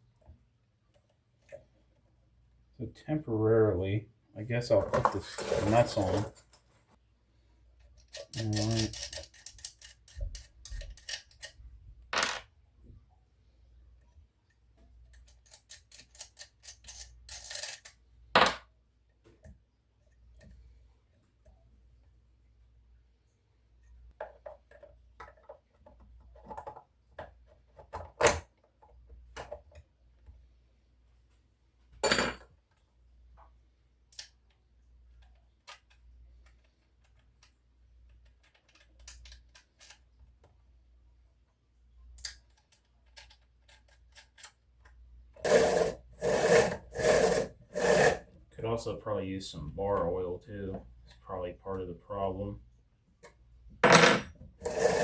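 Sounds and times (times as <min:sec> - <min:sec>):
loud scraping strokes: 0:45.4 - 0:48.3, 0:54.6 - 0:55.0.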